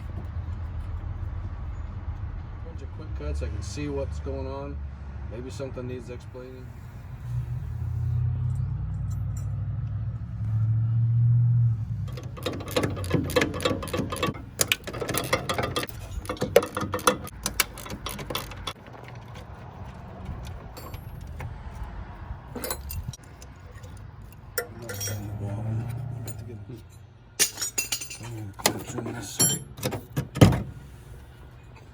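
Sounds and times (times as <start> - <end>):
metal tools clinking and clanking: 8.5 - 9.6, 12.0 - 30.7.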